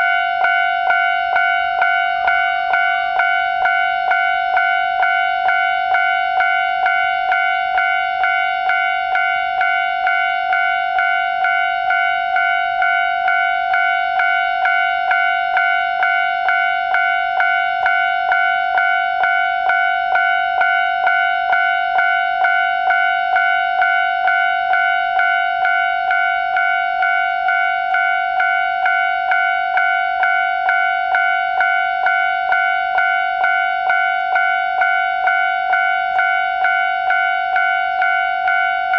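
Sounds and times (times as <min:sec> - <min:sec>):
level crossing bell ringing: 0:00.0 - 0:38.9.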